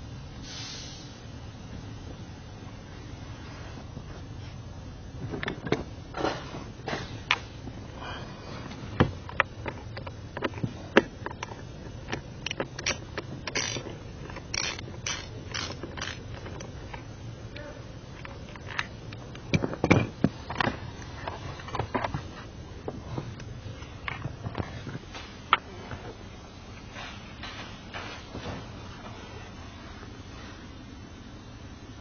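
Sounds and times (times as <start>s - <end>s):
clicks and knocks of hands working: 8.6s - 25.7s.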